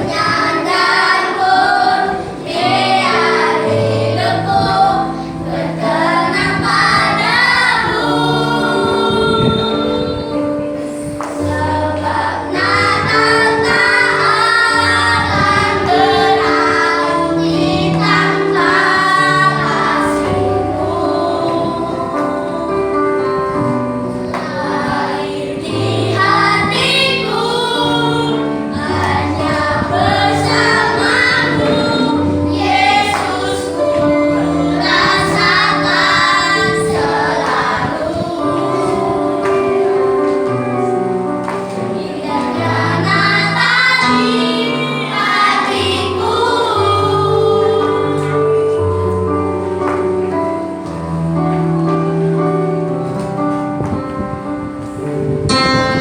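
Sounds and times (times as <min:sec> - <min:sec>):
children's choir singing: 0:00.0 - 0:56.0
instrumental accompaniment: 0:00.0 - 0:56.0.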